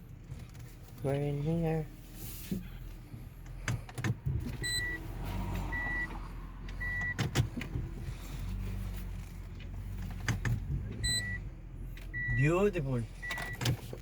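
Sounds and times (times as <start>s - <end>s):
car warning chime beeps: 4.6s - 6.2s, 6.8s - 7.5s, 10.9s - 13.9s.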